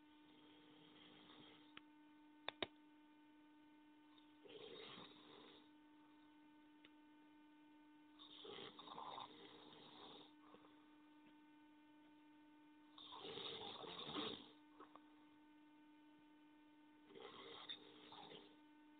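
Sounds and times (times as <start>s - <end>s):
steady electrical hum: 0.0s - 18.9s
person snoring faintly: 0.3s - 1.8s, 4.4s - 5.8s, 8.2s - 10.9s, 12.9s - 15.0s, 17.1s - 18.6s.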